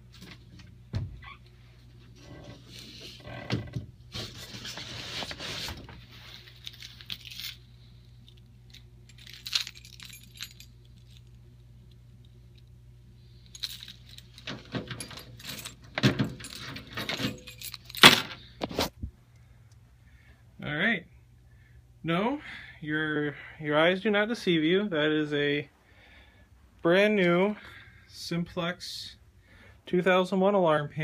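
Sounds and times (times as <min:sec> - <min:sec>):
knocks and clinking clatters: 0:13.6 - 0:18.4.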